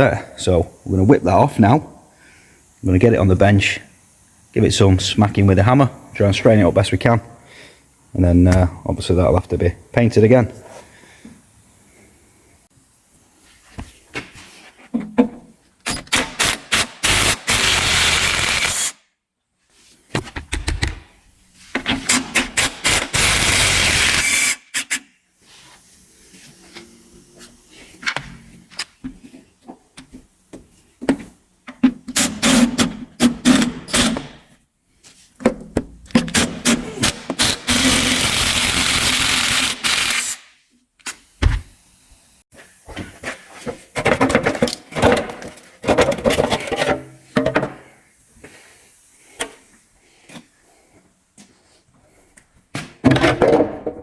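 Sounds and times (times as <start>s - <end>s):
power tool bursts: 15.9s - 19.0s, 22.1s - 25.0s, 32.2s - 34.3s, 36.3s - 40.5s.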